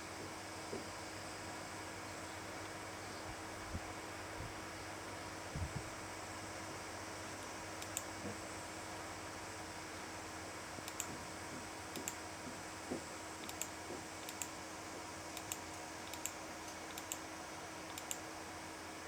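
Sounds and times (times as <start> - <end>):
background hiss and hum: 0.0 - 19.0
faint sharp clicks: 7.8 - 8.1, 10.9 - 11.1, 13.4 - 14.5, 15.4 - 17.2, 17.9 - 18.2.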